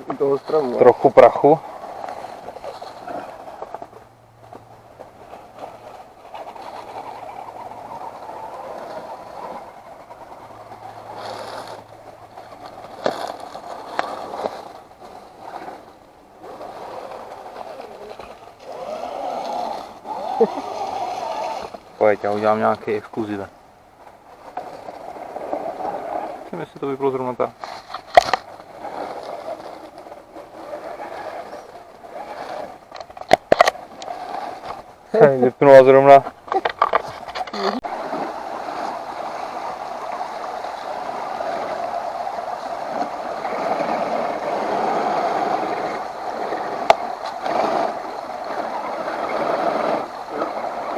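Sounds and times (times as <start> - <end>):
electric motor and gearbox whirring: 10.6 - 22.5
rc car electric motor running: 16.8 - 21.8.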